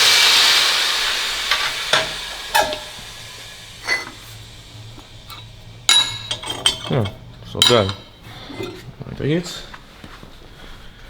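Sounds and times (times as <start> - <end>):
compressed air hissing: 0.0 - 9.0
metallic clinks of steel parts: 5.3 - 8.9.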